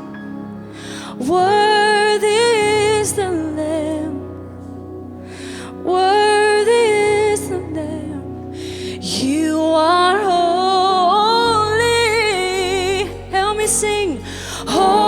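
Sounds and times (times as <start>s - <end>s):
woman singing with vibrato: 5.8s - 15.0s.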